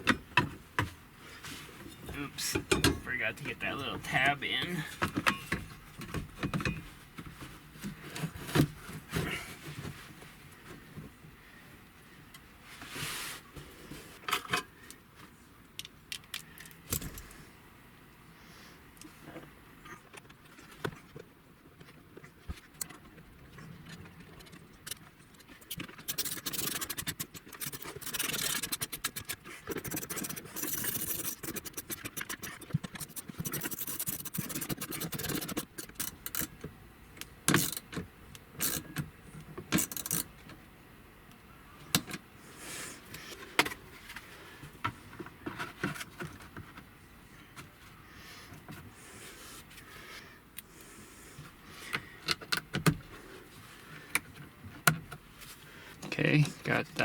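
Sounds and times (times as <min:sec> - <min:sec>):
plastic rubbing: 0:25.4 - 0:36.4.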